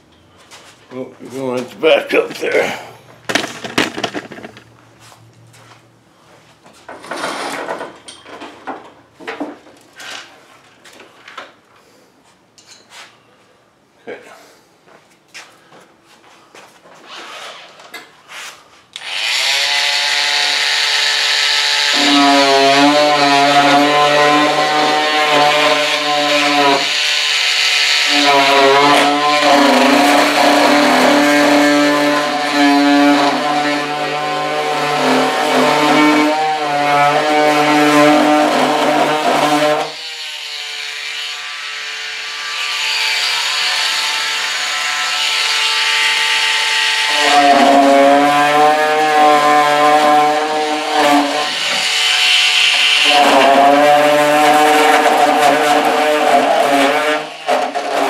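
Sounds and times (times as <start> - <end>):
power cutting tool running: 19.0 - 58.0.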